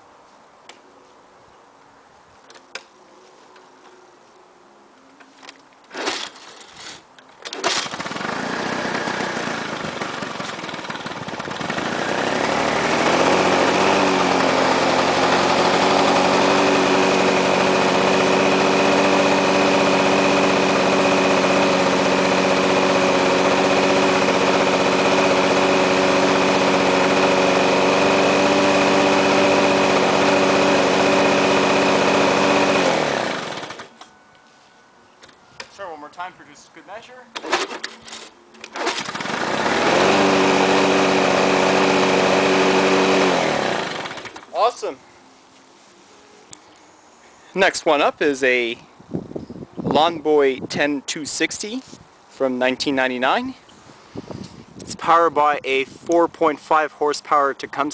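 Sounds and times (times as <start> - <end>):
pull cord starting mower: 5.9 - 34.1, 37.3 - 44.6
two-stroke mower engine running: 7.4 - 34.1, 37.3 - 44.8.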